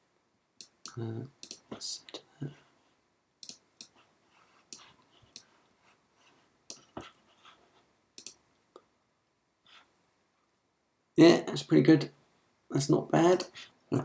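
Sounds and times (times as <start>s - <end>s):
mouse and keyboard clicks: 0.6s - 1.6s, 3.4s - 4.0s, 8.2s - 8.4s.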